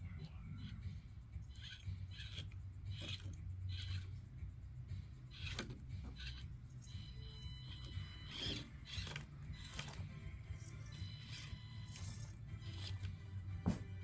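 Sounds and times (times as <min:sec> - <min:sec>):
toy car tyres scraping obstacles: 0:01.4 - 0:04.3, 0:08.1 - 0:10.0.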